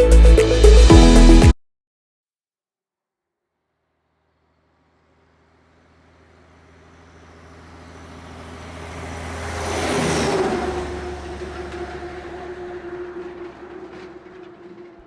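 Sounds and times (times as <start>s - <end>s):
heavy vehicle passing: 4.6s - 15.0s.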